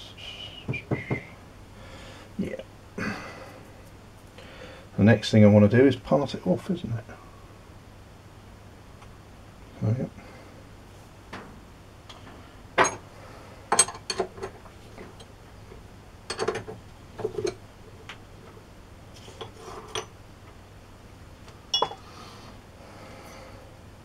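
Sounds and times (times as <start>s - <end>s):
metal tools clinking and knocking: 16.3s - 16.7s, 21.7s - 22.0s.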